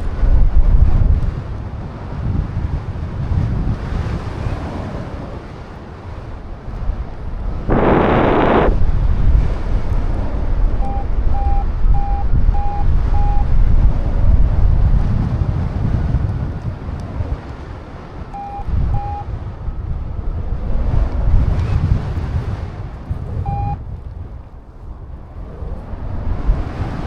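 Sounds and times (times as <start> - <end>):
wind buffeting microphone: 0.0 - 27.0
short rising beeps: 10.8 - 13.5, 18.4 - 19.2, 23.4 - 23.8.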